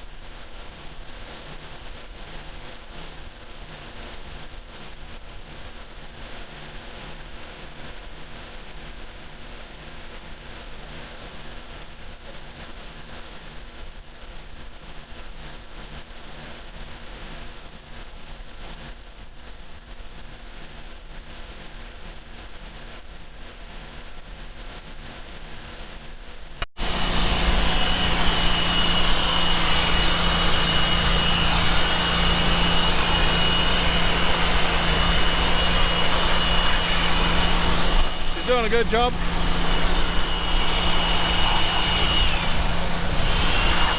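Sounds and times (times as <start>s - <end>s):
loud engine drone: 26.7s - 43.9s
farm machinery engine running: 26.8s - 43.9s
thin high whine: 26.8s - 43.9s.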